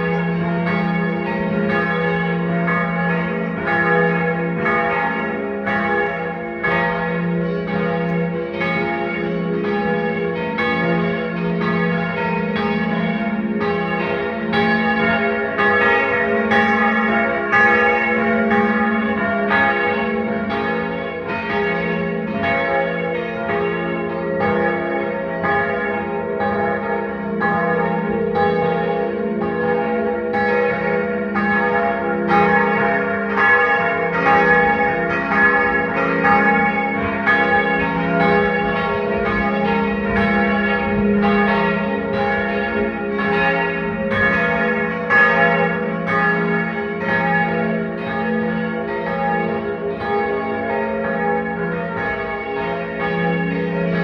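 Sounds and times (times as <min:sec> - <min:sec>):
church bells pealing: 0:00.0 - 0:54.0.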